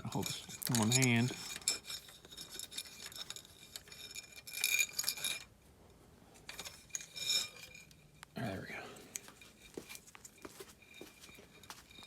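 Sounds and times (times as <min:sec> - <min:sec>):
small parts clicking and rattling: 0:00.0 - 0:05.6, 0:06.4 - 0:08.4.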